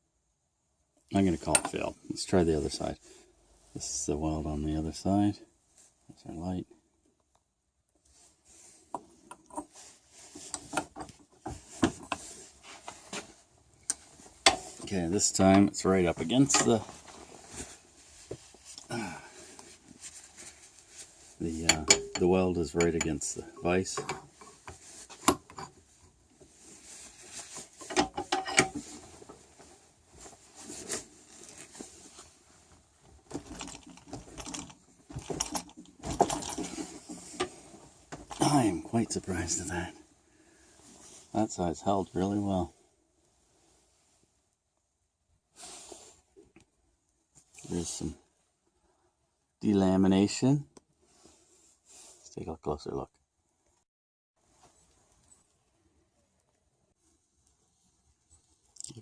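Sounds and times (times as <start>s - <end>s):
metal clanks and scraping: 13.8s - 15.7s, 16.3s - 17.1s, 21.5s - 25.9s, 27.4s - 29.0s
metal tools clicking and rattling: 21.7s - 23.2s, 33.4s - 36.7s.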